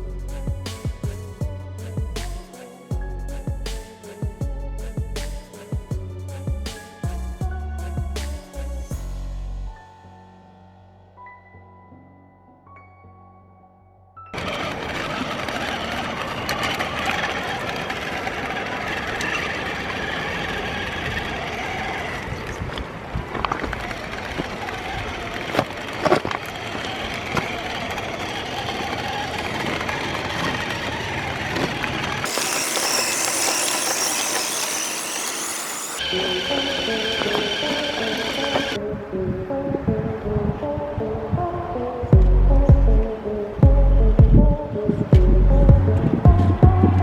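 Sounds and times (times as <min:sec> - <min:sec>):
background music: 0:00.0 - 0:14.4, 0:32.3 - 0:47.0
toy car tracks clattering: 0:14.4 - 0:21.8, 0:23.4 - 0:38.8
electric motor whirring: 0:32.2 - 0:38.8
bright hiss: 0:32.3 - 0:36.0.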